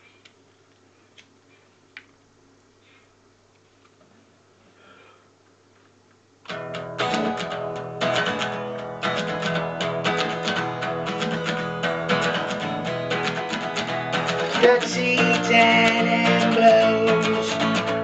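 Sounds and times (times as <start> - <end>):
guitar strumming chords: 6.5 - 18.0.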